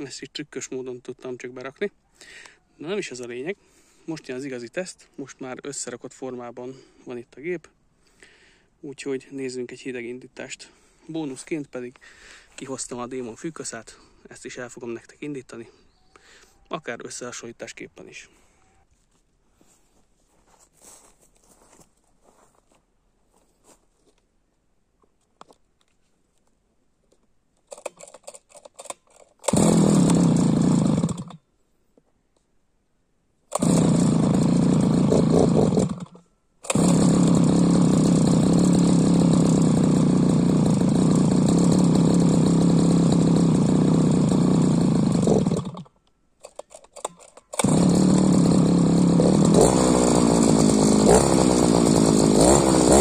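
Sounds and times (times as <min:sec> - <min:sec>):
pull cord rattling: 0:27.7 - 0:31.4, 0:44.3 - 0:53.0
two-stroke engine running: 0:29.4 - 0:31.4, 0:33.5 - 0:45.9, 0:46.5 - 0:53.0.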